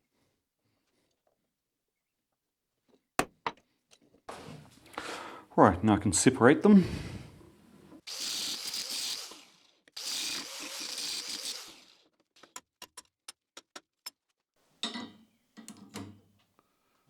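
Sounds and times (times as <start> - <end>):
grinder cutting through welds: 8.0 - 12.5.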